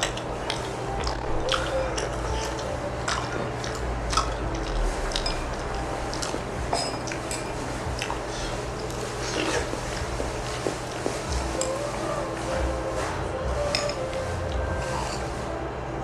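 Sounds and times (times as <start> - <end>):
wet chewing: 0.0 - 12.0
utensils clicking against dishes: 0.0 - 12.6, 13.6 - 15.4
steady low hum: 0.0 - 16.0.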